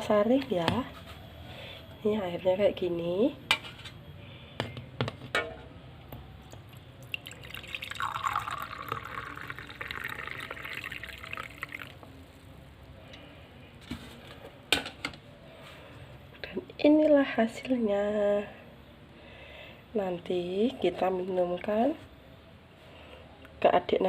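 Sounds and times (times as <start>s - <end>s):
liquid pouring: 6.6s - 12.5s.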